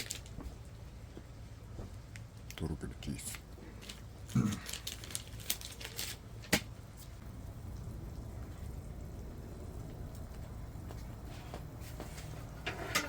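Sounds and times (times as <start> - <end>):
steady low hum: 6.2 - 13.0.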